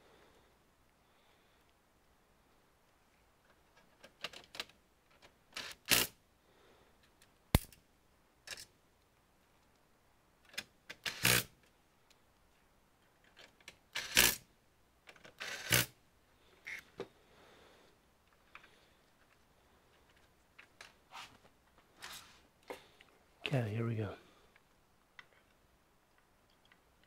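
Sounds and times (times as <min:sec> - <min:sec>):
clicks and knocks of handling parts: 0:03.4 - 0:05.4, 0:11.6 - 0:13.8.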